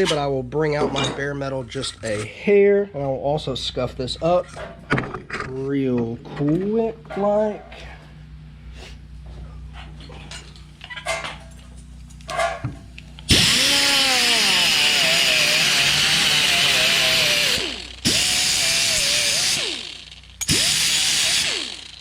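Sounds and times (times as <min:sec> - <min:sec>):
power grinder whining on metal: 0:13.1 - 0:22.0.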